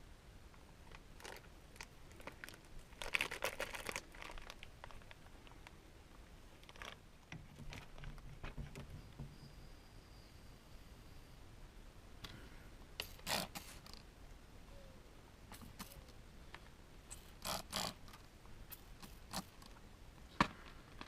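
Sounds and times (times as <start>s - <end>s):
crinkling rustle: 0.8s - 8.9s, 15.5s - 21.0s.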